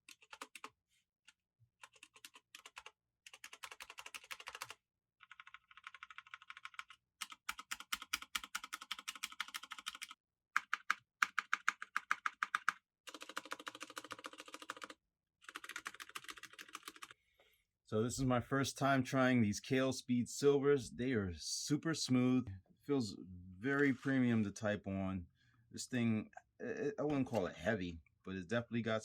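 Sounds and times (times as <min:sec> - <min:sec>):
fast mechanical keyboard typing: 0:00.1 - 0:00.7, 0:01.8 - 0:17.1.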